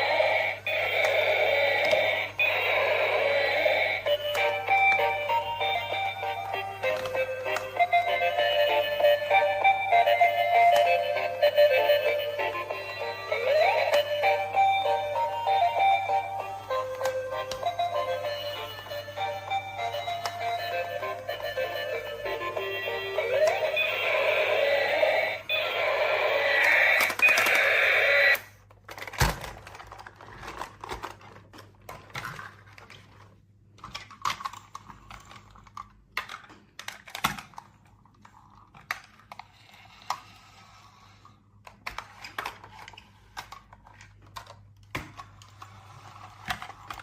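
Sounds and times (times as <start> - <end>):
music: 2.5 - 26.2
clicks of toy pieces handled: 28.4 - 47.0.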